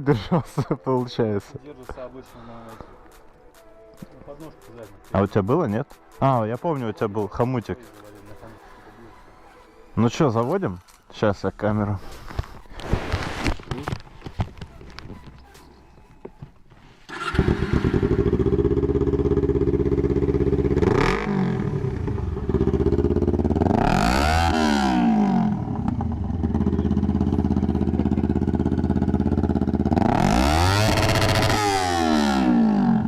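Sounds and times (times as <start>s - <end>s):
motorcycle engine starting and revving: 17.1s - 33.0s.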